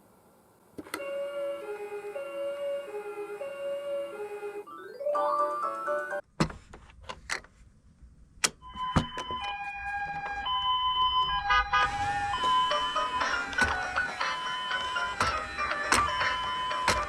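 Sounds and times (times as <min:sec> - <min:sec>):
toy two-tone siren: 0:08.7 - 0:17.0.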